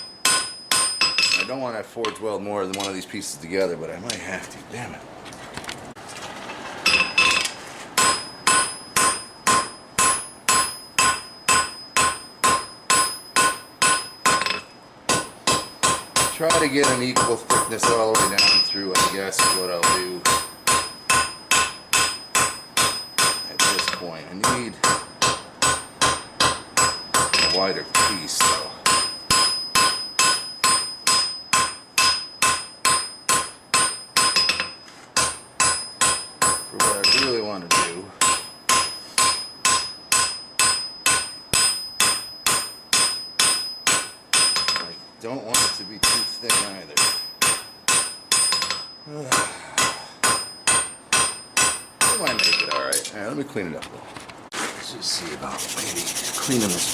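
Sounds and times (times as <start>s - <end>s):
hammer striking steel on anvil: 0.0s - 2.9s, 6.9s - 53.0s.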